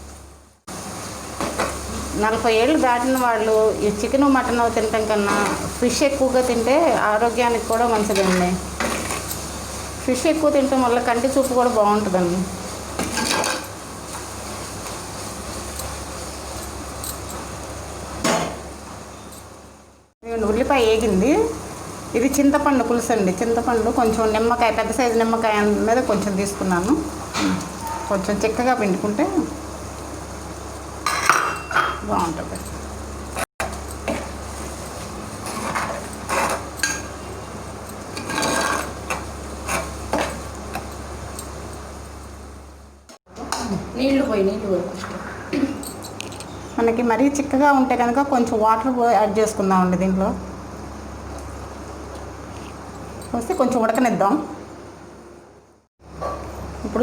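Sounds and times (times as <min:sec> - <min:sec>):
onion sizzling in oil: 0:00.0 - 0:45.0
utensil scraping clay pot: 0:35.4 - 0:37.1, 0:38.2 - 0:40.4.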